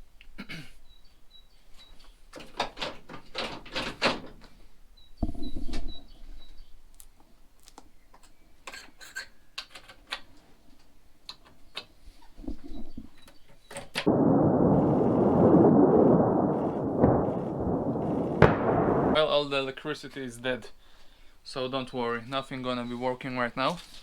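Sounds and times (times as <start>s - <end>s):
bird chirping: 5.0s - 6.9s.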